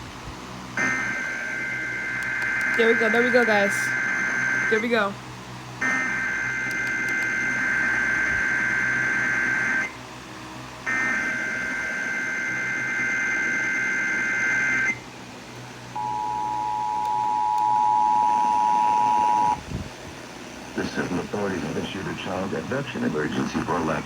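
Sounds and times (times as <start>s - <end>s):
two-tone alert signal: 16.0s - 19.6s.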